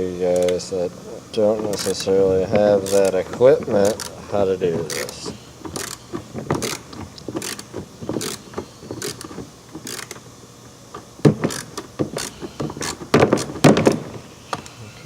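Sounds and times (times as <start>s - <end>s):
hand ratchet clicking: 1.6s - 10.3s, 11.3s - 13.6s
louder knocks: 11.2s - 14.2s.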